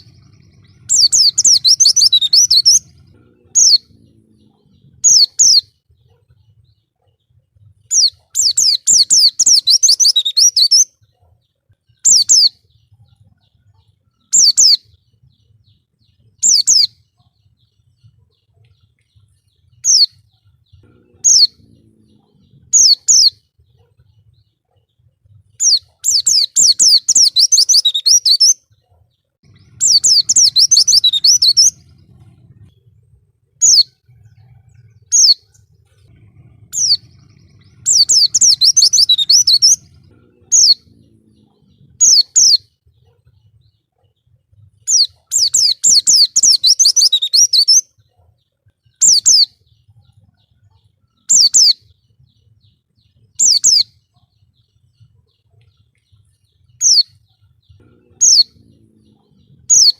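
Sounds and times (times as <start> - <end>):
rapid high twittering: 0.0 - 5.6, 29.4 - 32.7, 33.6 - 42.6
bird singing high slurred notes: 0.0 - 5.7, 7.9 - 10.9, 19.8 - 23.4, 25.6 - 28.6, 29.4 - 33.0, 33.6 - 42.7, 44.9 - 47.8, 56.7 - 59.9.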